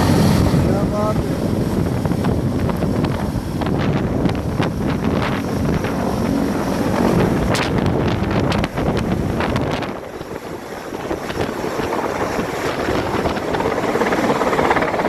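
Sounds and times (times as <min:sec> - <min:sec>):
helicopter taking off: 0:00.0 - 0:15.0
wind buffeting microphone: 0:00.0 - 0:15.0.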